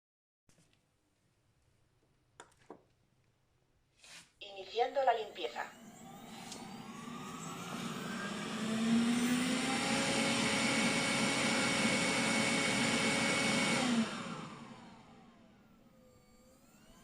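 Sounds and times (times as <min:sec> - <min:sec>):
robot vacuum fan whine: 0:04.6 - 0:17.0.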